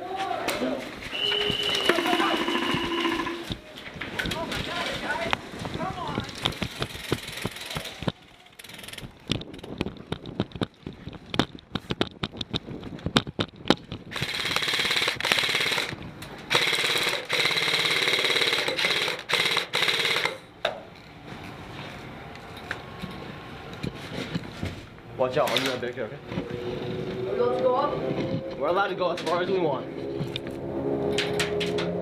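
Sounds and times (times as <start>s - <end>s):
airsoft guns firing: 1.6s - 3.6s, 14.1s - 15.9s, 16.5s - 20.4s.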